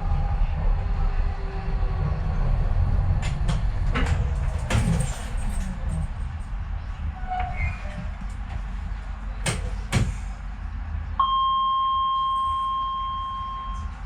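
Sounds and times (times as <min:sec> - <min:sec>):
train interior rumble: 0:00.0 - 0:14.0
steady electronic beep tone: 0:11.2 - 0:13.9.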